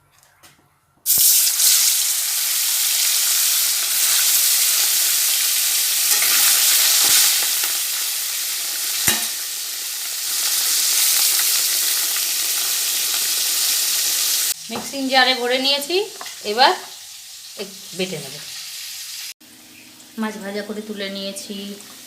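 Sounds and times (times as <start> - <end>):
fish sizzling in hot oil: 1.1 - 22.0.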